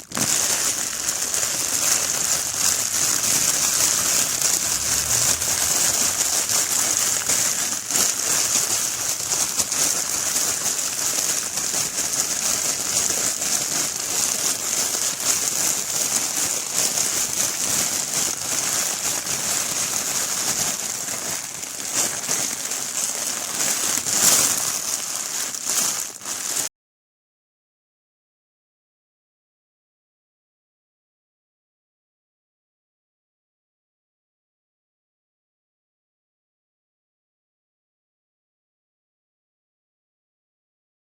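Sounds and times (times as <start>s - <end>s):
heavy rain falling: 0.0s - 26.6s.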